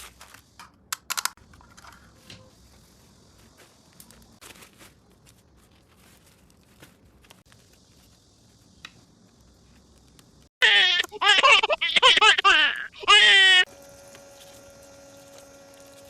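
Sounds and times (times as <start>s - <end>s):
toy packaging crinkling: 4.0s - 8.1s.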